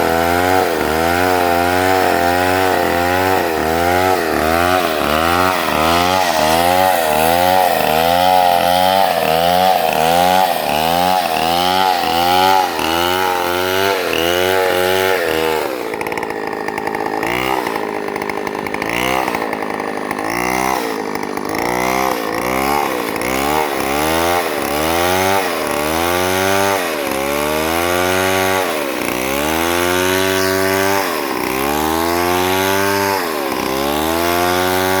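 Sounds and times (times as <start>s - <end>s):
chainsaw cutting a log: 0.0s - 35.0s.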